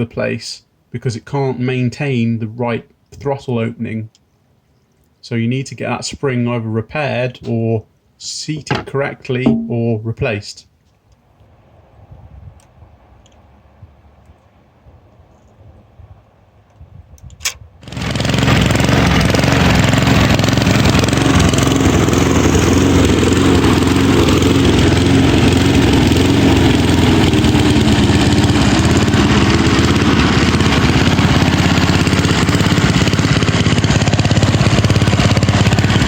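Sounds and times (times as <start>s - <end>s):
lawnmower engine running: 17.8s - 36.0s.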